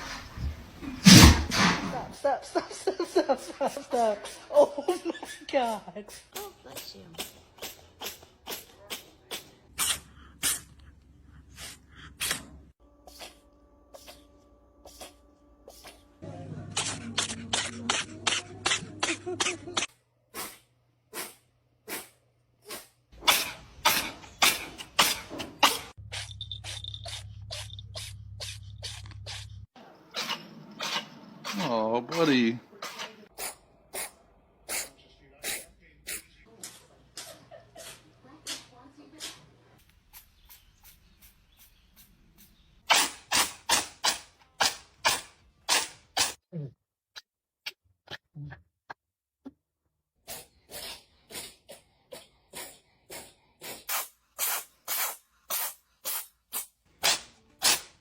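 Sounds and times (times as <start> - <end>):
pet sneezing: 0.0 - 2.2, 6.1 - 10.7, 11.6 - 13.4, 14.0 - 16.0, 16.8 - 27.2, 32.8 - 36.3, 50.2 - 58.0.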